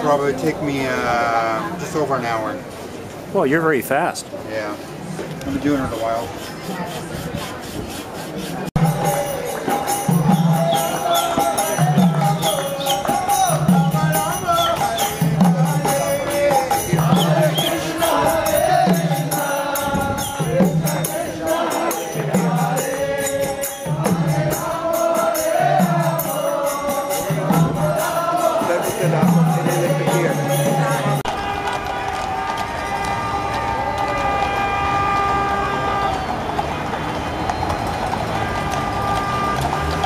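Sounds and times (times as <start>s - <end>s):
chanting voices: 5.7s - 34.4s
slow steady drum beat: 8.5s - 31.3s.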